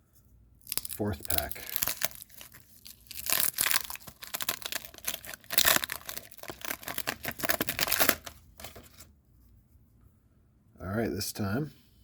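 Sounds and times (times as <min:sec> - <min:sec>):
plastic wrapper crinkling and tearing: 0:00.6 - 0:09.1.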